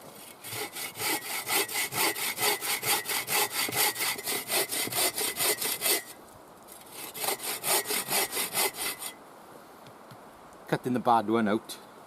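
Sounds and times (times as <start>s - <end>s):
hand saw cutting log: 0.0s - 6.2s, 6.8s - 9.2s.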